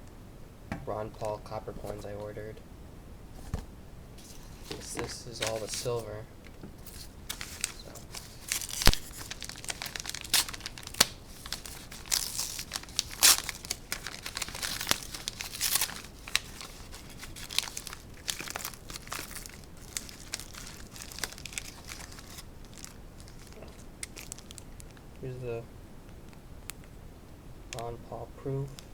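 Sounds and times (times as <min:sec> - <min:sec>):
packaging crinkling and tearing: 0:04.2 - 0:06.2, 0:06.8 - 0:25.1.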